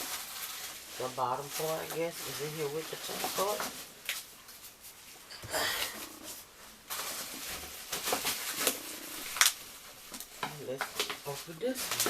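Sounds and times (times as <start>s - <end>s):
plastic and cardboard rustling: 0.0s - 12.0s.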